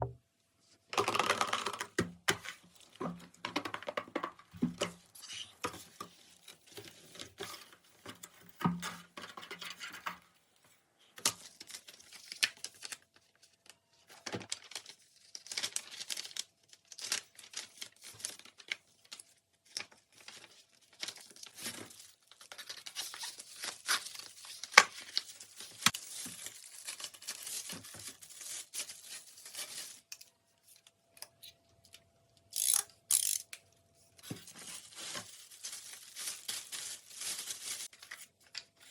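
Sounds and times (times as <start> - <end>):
plastic wrap crinkling and tearing: 11.2 - 31.0, 34.2 - 38.9.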